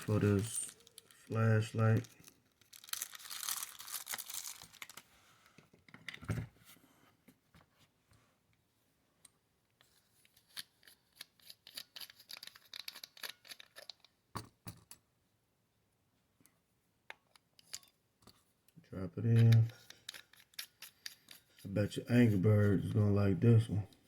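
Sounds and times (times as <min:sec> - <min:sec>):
packaging crinkling: 0:00.0 - 0:05.1.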